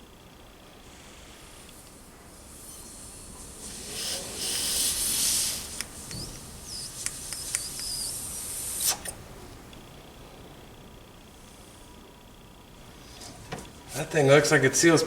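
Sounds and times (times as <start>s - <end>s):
air hissing through carburettor: 0.0s - 10.1s
short high squeaks: 2.4s - 9.2s
small clicks: 5.8s - 8.2s.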